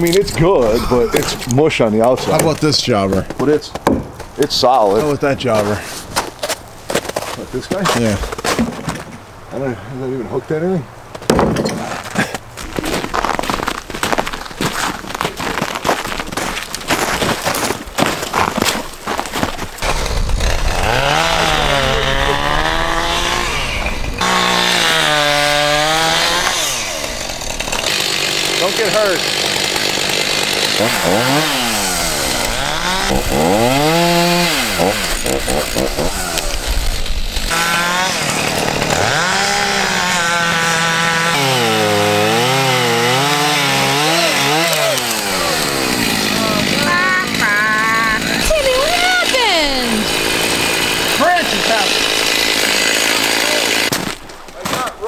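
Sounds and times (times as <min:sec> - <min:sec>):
chainsaw cutting wood: 0:12.9 - 0:54.9.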